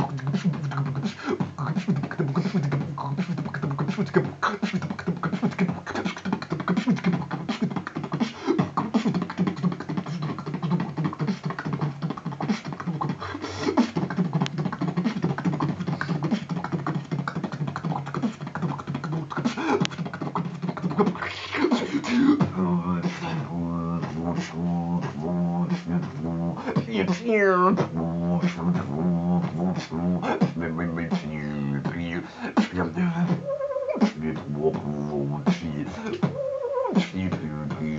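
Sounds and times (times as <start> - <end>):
beatboxing: 0.0 - 37.9
hummed bass line: 22.4 - 32.2, 34.2 - 36.0.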